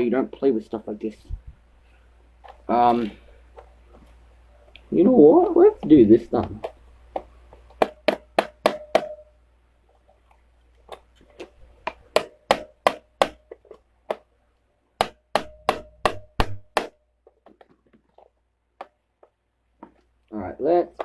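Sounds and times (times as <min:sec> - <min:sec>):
hammer blows ringing: 0:07.8 - 0:09.4.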